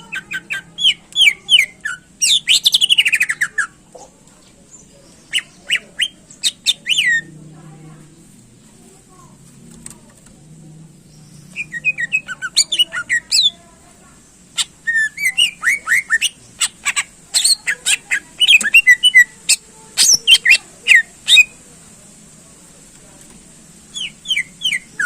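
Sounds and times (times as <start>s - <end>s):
bird singing whistles and chirps: 11.3s - 13.6s, 14.6s - 16.7s, 17.4s - 19.4s, 23.9s - 25.0s.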